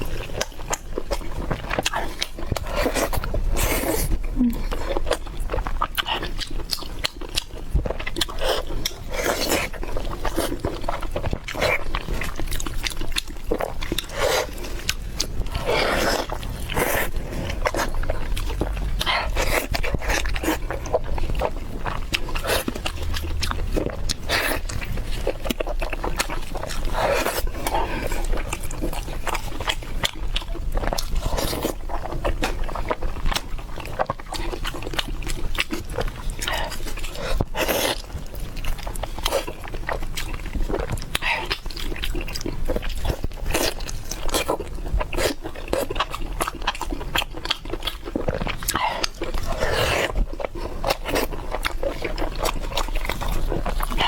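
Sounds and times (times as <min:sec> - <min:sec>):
close chewing and lip-smacking: 0:00.0 - 0:54.0.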